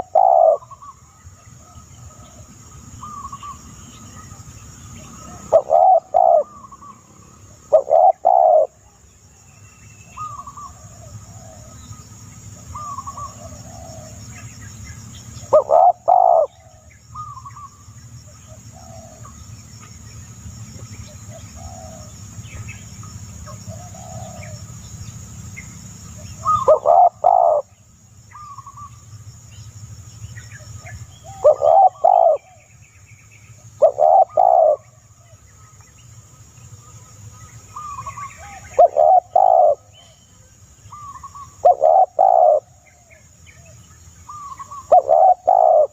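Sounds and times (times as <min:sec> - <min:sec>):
loud bird call: 0:00.0 - 0:04.4, 0:05.0 - 0:08.8, 0:09.9 - 0:19.4, 0:25.6 - 0:29.0, 0:30.5 - 0:32.8, 0:33.8 - 0:35.6, 0:37.7 - 0:40.3, 0:40.9 - 0:45.9
soft bird calls: 0:00.0 - 0:45.9.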